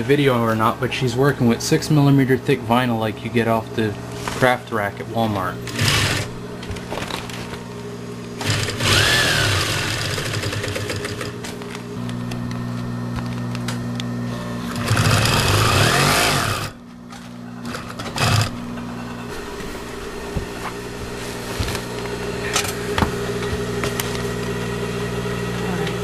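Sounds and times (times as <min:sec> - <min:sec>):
sewing machine motor hum: 0:05.2 - 0:26.0
sewing machine stitching: 0:05.7 - 0:06.3, 0:08.4 - 0:11.5, 0:14.7 - 0:16.8, 0:17.6 - 0:18.6.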